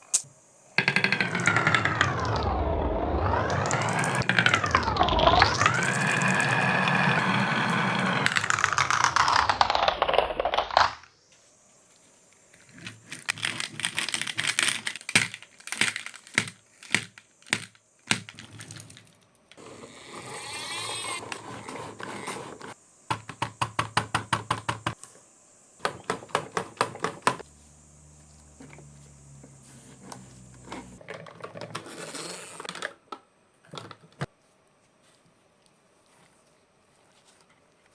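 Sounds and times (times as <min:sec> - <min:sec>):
marbles clicking on wooden track: 0:00.8 - 0:11.0
marbles rolling whirr: 0:00.8 - 0:11.1, 0:19.6 - 0:22.8, 0:26.9 - 0:32.7.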